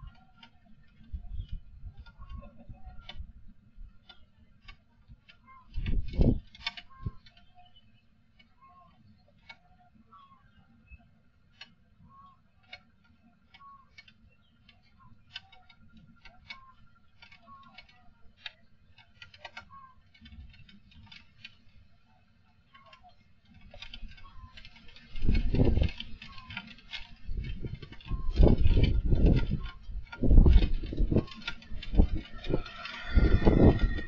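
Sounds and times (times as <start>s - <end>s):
sharp ticks and rattles: 0.0s - 9.6s, 12.6s - 34.0s
strong wind rumbling on microphone: 0.8s - 4.0s, 5.1s - 7.3s, 23.7s - 34.0s.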